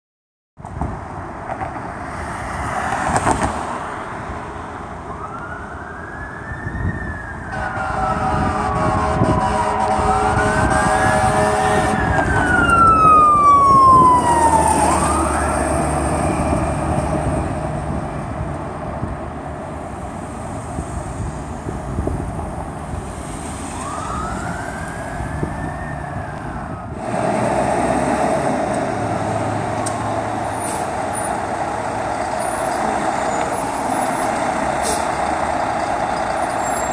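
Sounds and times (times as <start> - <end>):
fire truck siren wailing: 4.2 - 19.1, 20.8 - 36.9
truck engine rumble: 6.8 - 36.9
air horn: 7.5 - 12.2.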